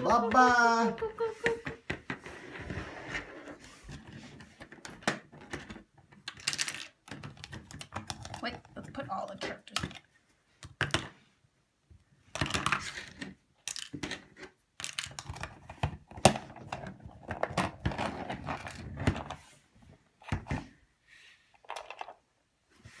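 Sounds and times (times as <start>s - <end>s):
plastic toys clattering: 3.9s - 11.2s, 12.3s - 19.4s, 21.5s - 22.3s.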